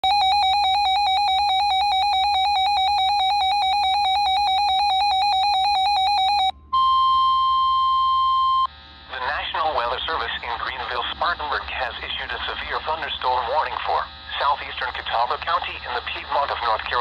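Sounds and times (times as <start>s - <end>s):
electronic alarm beeping: 0.0s - 8.7s
steady warning alarm tone: 0.0s - 17.0s.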